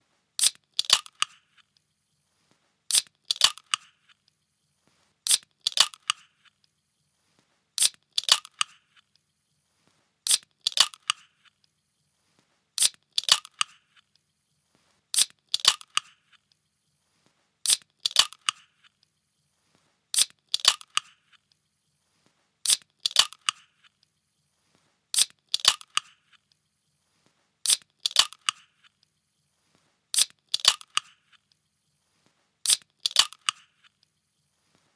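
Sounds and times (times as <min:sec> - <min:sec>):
can hissing: 0:00.4 - 0:01.0
can tab snapping open: 0:00.4 - 0:01.4, 0:02.9 - 0:03.9, 0:05.3 - 0:06.2, 0:07.8 - 0:08.8, 0:10.3 - 0:11.2, 0:12.8 - 0:13.8, 0:15.2 - 0:16.1, 0:17.7 - 0:18.6, 0:20.2 - 0:21.1, 0:22.7 - 0:23.6, 0:25.2 - 0:26.1, 0:27.7 - 0:28.6, 0:30.2 - 0:31.2, 0:32.7 - 0:33.6.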